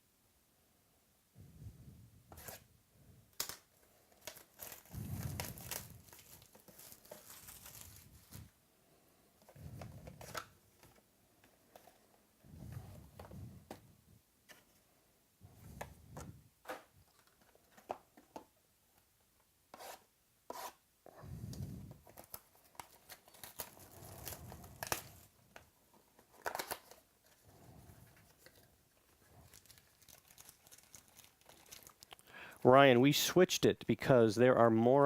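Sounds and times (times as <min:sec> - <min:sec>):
card wrappers tearing and crinkling: 0:03.4 - 0:08.5, 0:22.0 - 0:25.3, 0:26.2 - 0:27.1, 0:28.3 - 0:32.2.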